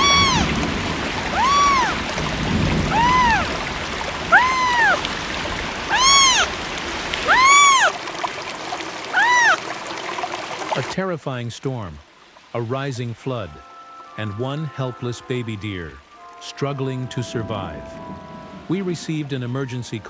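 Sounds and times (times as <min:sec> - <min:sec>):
fawn bleating: 0:00.0 - 0:00.5, 0:01.3 - 0:02.0, 0:02.9 - 0:03.5, 0:04.3 - 0:05.0, 0:05.9 - 0:06.5, 0:07.2 - 0:08.0
rain: 0:00.0 - 0:20.0
rushing flood water: 0:00.0 - 0:20.0.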